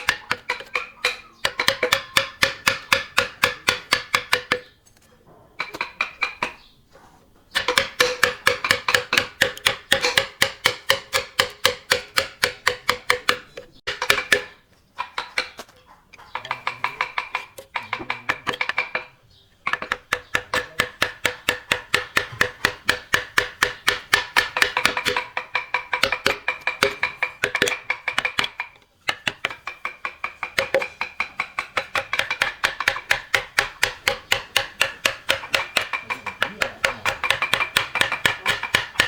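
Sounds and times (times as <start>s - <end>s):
hammer on ringing metal tool: 0.0s - 4.7s.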